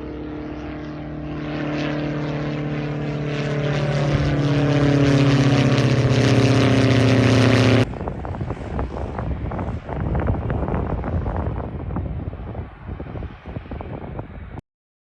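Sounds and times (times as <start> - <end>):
propeller aircraft flying over: 0.0 - 14.6.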